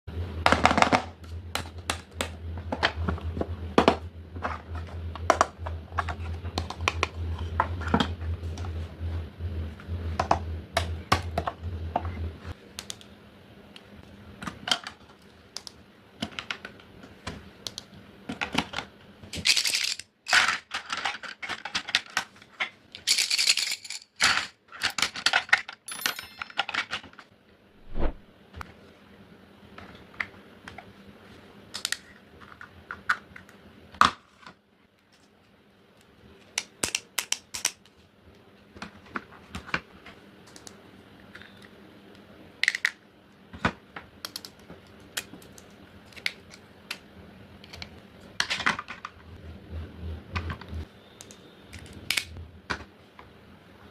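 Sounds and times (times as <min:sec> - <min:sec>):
low hum: 0:00.1 - 0:14.3, 0:27.7 - 0:28.3.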